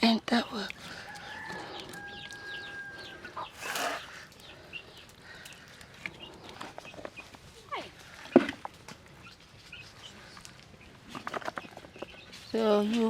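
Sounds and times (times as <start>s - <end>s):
short rustle: 3.5s - 4.2s.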